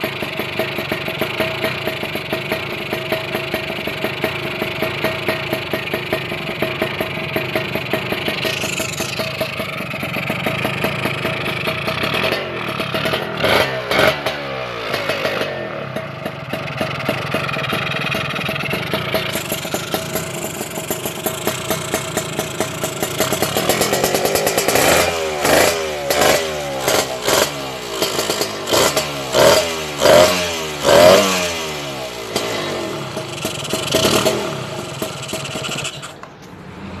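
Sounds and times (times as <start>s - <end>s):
motorcycle engine revving: 0.0s - 37.0s.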